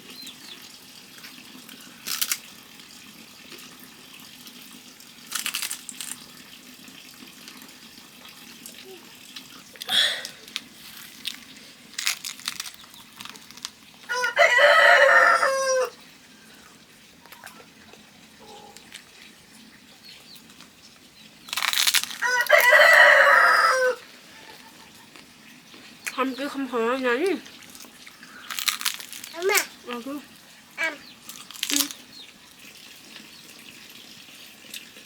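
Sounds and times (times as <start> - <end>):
rooster crowing: 14.1 - 16.0, 22.2 - 24.6.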